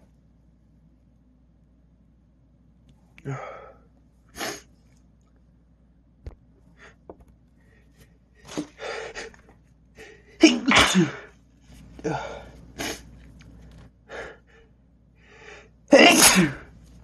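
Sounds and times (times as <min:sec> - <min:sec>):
man sneezing: 0:10.4 - 0:11.3, 0:15.9 - 0:16.7.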